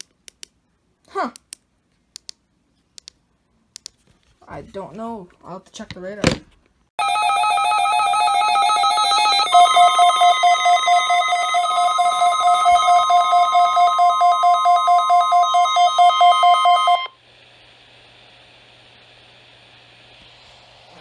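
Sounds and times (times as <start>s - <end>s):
electronic warning alarm tone: 7.0s - 17.2s.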